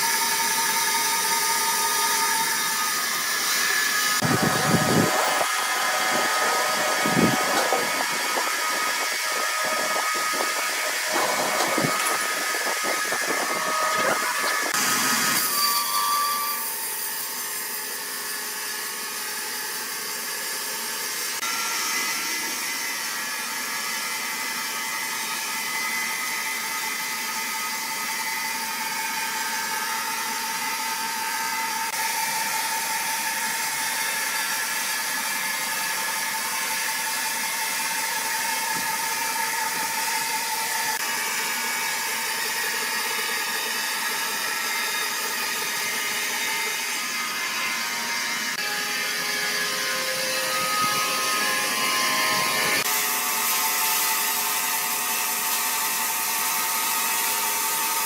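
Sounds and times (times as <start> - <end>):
sawmill machinery knocking and clatter: 0.0 - 21.6, 25.8 - 58.0.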